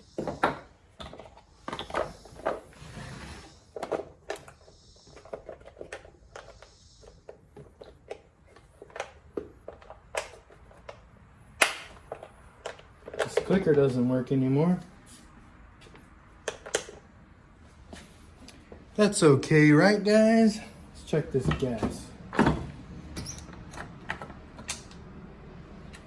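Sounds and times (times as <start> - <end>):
clicks and knocks of handling parts: 3.7 - 14.1, 15.8 - 17.2, 21.3 - 25.2.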